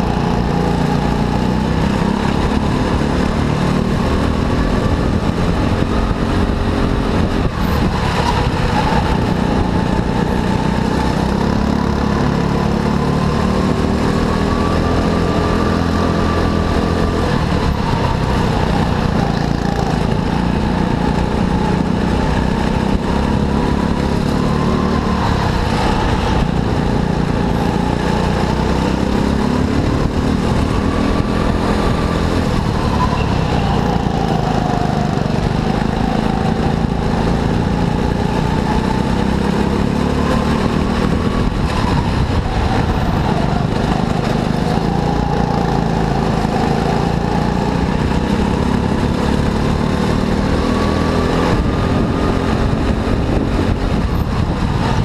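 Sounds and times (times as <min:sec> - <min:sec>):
go-kart engine running: 0:00.0 - 0:55.0.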